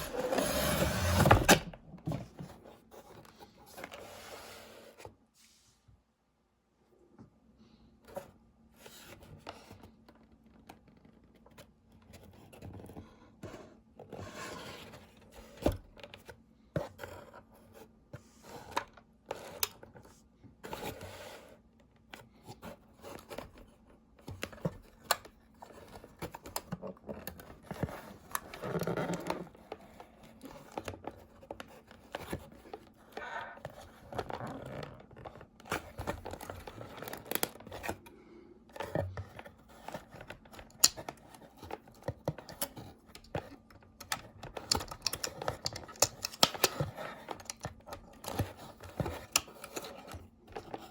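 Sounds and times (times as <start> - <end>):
cardboard and plastic rustling: 0.0 - 5.2, 8.1 - 50.9
packaging clicks and knocks: 24.2 - 38.0, 38.8 - 50.9.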